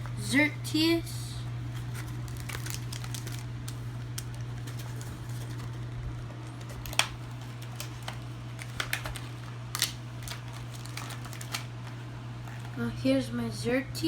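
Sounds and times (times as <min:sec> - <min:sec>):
steady low hum: 0:00.0 - 0:14.0
plastic packaging and cards handled: 0:01.6 - 0:12.8.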